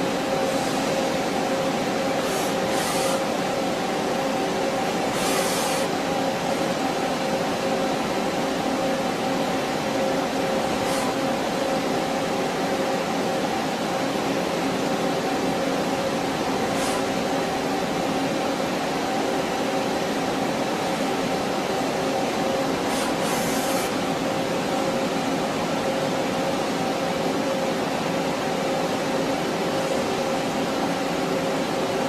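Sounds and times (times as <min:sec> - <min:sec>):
machine hum with constant tones: 0:00.0 - 0:32.0
short hissing spurts: 0:02.2 - 0:03.2, 0:05.1 - 0:05.9.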